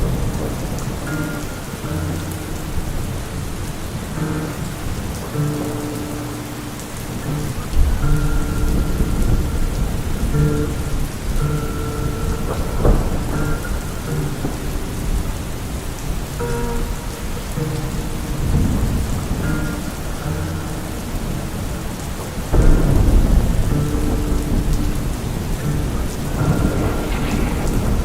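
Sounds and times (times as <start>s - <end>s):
thunder crack: 0.0s - 20.2s, 21.0s - 28.0s
heavy rain: 0.0s - 28.0s
slowed reverb song: 0.0s - 28.0s
thunder rumbling: 0.0s - 28.0s.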